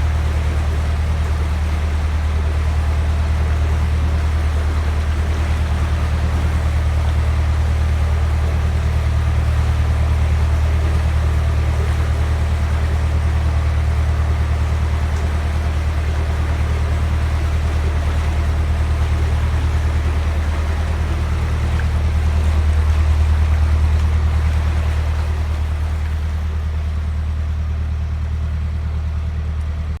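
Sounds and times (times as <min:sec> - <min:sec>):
diesel boat engine droning: 0:00.0 - 0:30.0.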